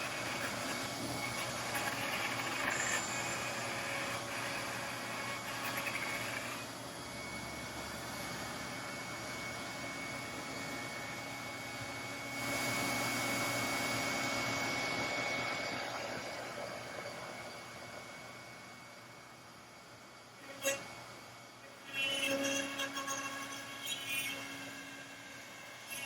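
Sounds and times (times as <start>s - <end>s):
router cutting wood: 0.0s - 6.7s, 21.7s - 26.0s
router spindle whining: 0.0s - 19.1s, 20.4s - 26.0s.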